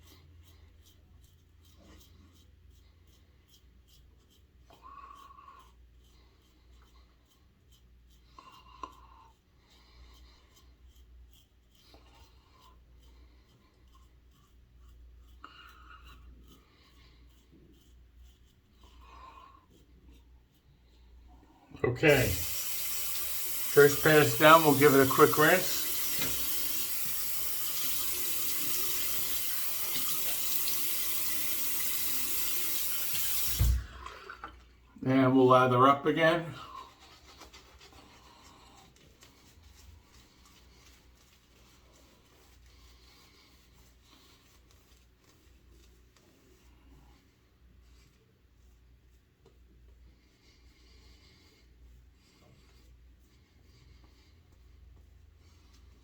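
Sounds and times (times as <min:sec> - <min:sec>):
razor scraping stubble: 0:00.0 - 0:34.1
tap running into sink: 0:22.5 - 0:34.0.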